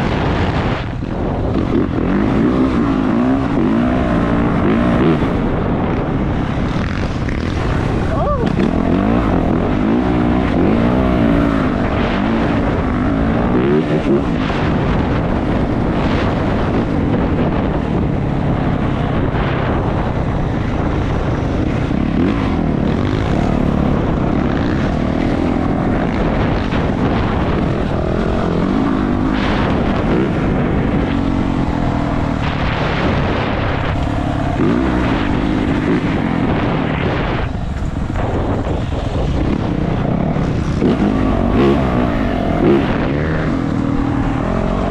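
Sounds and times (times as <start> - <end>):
dirt bike engine revving: 0.0 - 44.9.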